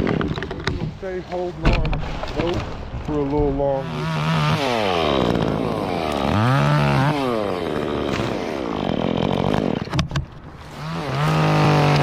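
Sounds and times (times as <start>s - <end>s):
chainsaw revving: 3.1s - 12.0s.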